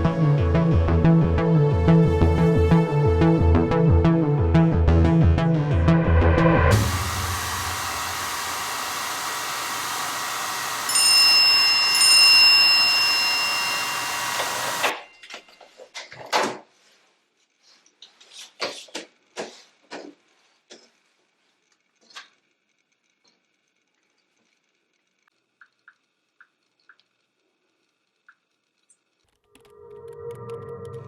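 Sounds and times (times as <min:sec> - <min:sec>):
hair dryer blowing: 0:06.6 - 0:15.0.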